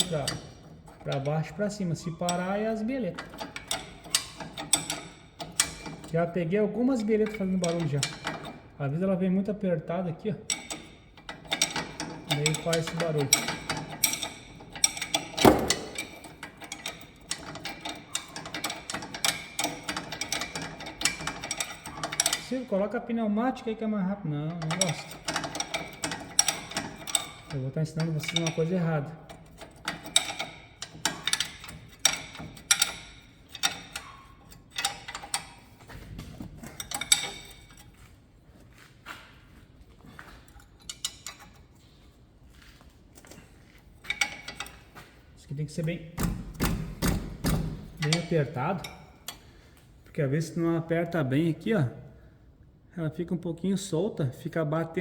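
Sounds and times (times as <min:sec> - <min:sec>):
wrench clinking on metal: 0:00.0 - 0:08.8, 0:10.3 - 0:22.7, 0:24.4 - 0:38.0, 0:40.0 - 0:41.8, 0:42.6 - 0:45.1, 0:45.8 - 0:49.6
ratchet wrench clicking: 0:03.2 - 0:06.1, 0:24.7 - 0:35.5
loud metallic knock: 0:15.4 - 0:16.2.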